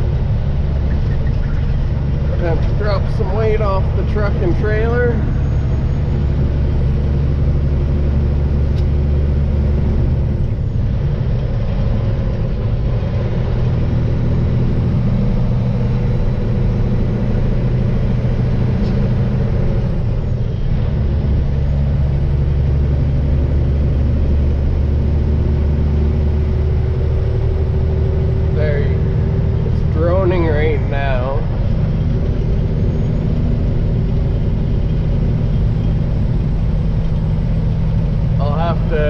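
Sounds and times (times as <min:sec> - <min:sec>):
truck diesel engine under load: 0:00.0 - 0:39.0.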